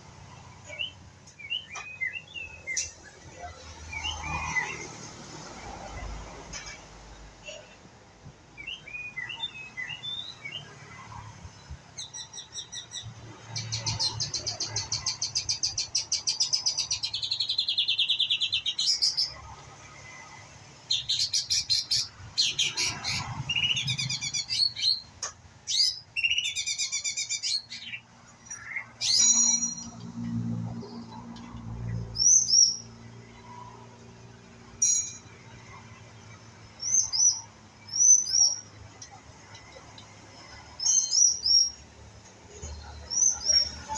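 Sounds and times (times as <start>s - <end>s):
songbird trilling song: 0.6s - 3.0s, 8.6s - 10.8s, 12.0s - 19.4s, 20.9s - 30.0s, 36.8s - 38.8s.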